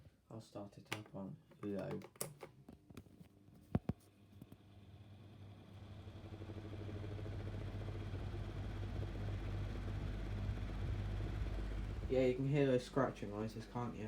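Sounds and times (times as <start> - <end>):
desk fan motor humming: 4.6 - 14.0.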